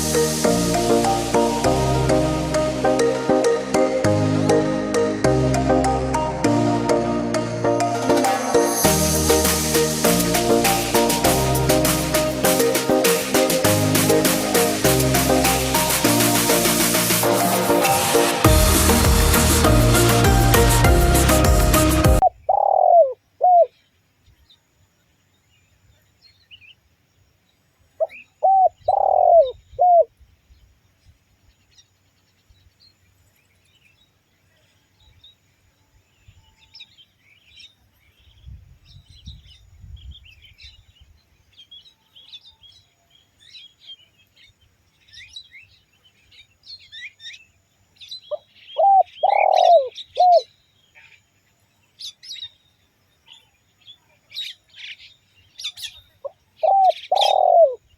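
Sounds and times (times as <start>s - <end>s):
dove cooing: 22.2s - 23.7s, 28.0s - 30.1s, 48.8s - 50.5s, 56.6s - 57.8s
small birds chirping: 27.4s - 57.9s.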